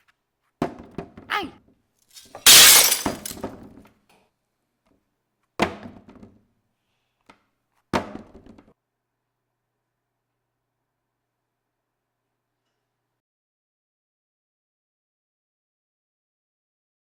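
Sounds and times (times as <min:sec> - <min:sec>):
loud shattering crash: 0:02.2 - 0:03.4.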